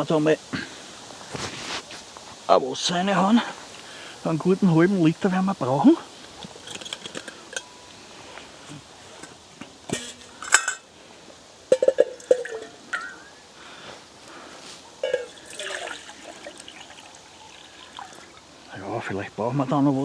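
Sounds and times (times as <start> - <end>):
sharp metal clinks: 11.7 - 13.3, 15.0 - 15.8
water pouring into a pot: 15.0 - 18.8.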